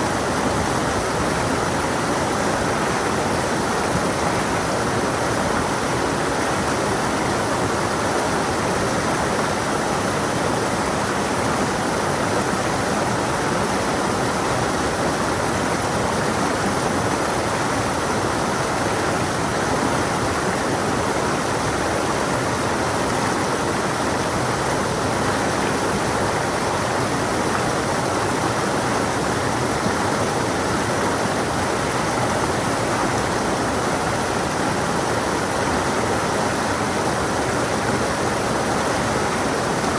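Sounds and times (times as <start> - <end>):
water rushing over rocks: 0.0 - 39.9.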